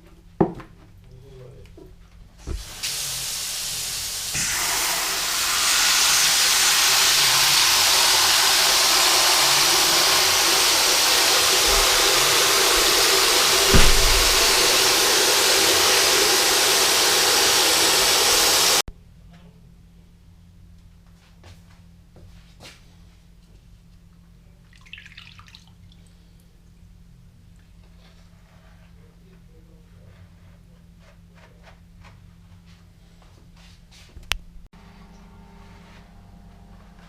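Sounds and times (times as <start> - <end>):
water jet hissing: 2.4 - 18.8
brief low thump: 11.6 - 13.0, 13.6 - 14.9.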